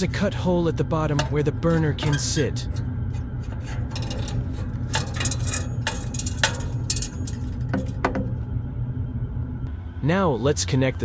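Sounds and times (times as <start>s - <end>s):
steady low rumble: 0.0s - 11.0s
metal clinks and knocks: 3.5s - 8.4s.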